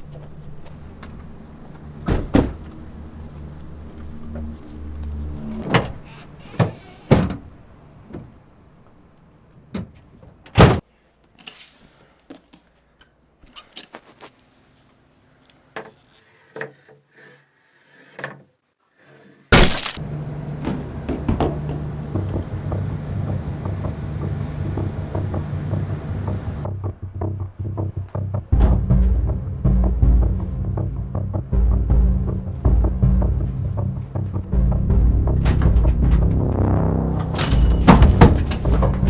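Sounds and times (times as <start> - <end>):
sharp knocks and thuds: 2.0 - 2.8, 19.5 - 20.0, 28.6 - 29.3, 37.2 - 39.0
loud steady low rumble: 28.4 - 39.0.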